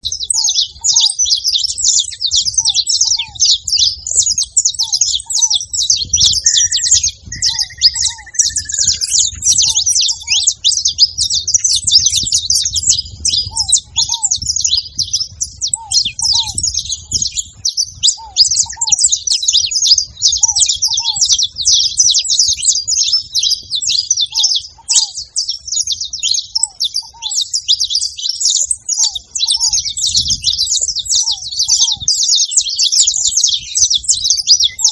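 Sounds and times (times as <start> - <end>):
finches chirping: 0.0 - 34.9
short falling whistle: 6.4 - 9.2
lower two-note bird call: 6.4 - 9.8.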